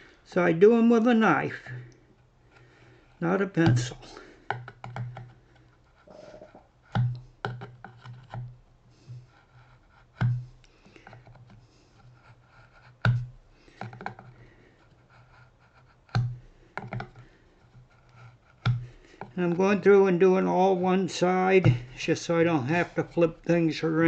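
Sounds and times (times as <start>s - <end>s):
knife scratching wood: 11.2s - 13.1s, 14.8s - 16.2s, 17.6s - 18.7s.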